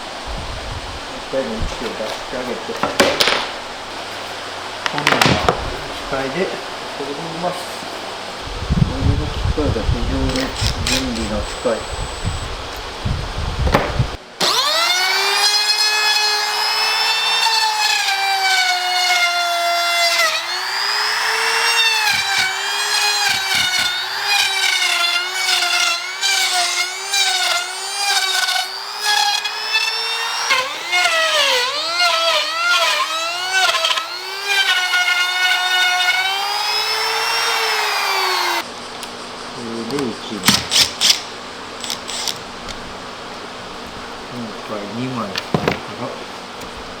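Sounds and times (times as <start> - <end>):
electric router cutting wood: 8.2 - 38.7, 41.8 - 42.8.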